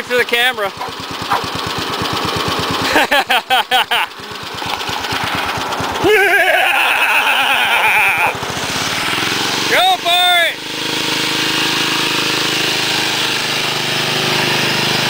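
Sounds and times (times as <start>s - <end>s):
lawn tractor engine putter: 0.0s - 6.1s, 8.2s - 10.0s, 10.6s - 15.0s
voices calling out: 0.3s - 1.6s, 5.9s - 8.7s, 9.7s - 10.6s.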